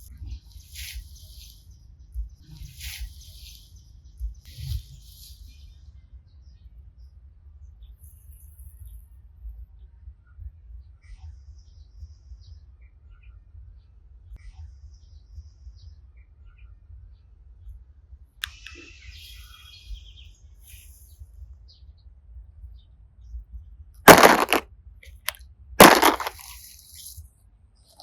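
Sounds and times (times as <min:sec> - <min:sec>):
sharp click: 0:24.1 - 0:24.6, 0:25.8 - 0:26.5.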